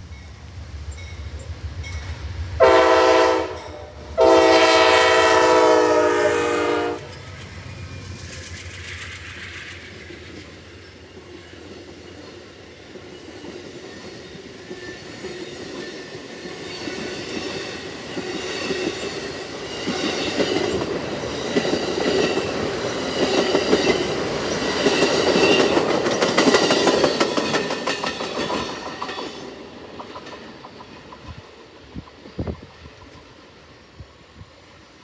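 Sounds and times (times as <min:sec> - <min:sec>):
train wheels clicking over rail joints: 0:07.0 - 0:33.4.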